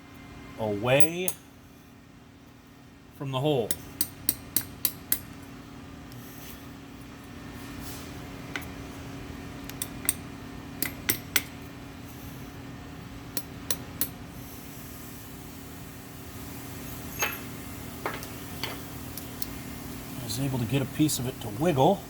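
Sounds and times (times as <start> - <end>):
steady low hum: 0.0 - 22.0
metal tool tapping metal: 10.8 - 11.5, 17.2 - 18.8.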